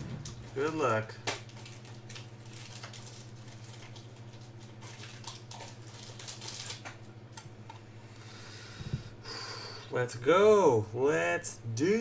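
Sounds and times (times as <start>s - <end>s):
low electrical hum: 0.0s - 12.0s
cards and packaging rustling: 0.2s - 7.2s.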